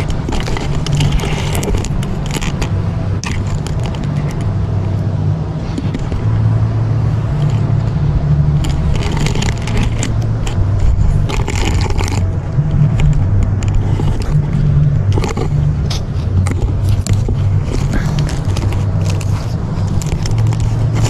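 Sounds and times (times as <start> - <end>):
clicks and scraping rattles: 0.0 - 21.0
vehicle engine humming: 0.0 - 21.0.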